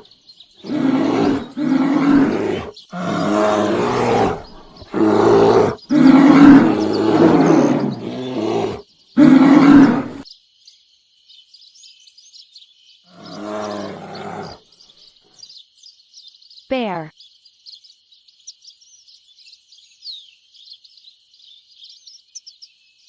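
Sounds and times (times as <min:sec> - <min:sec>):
small birds chirping: 0:00.0 - 0:23.0
bear growling: 0:00.6 - 0:10.2, 0:13.1 - 0:14.6.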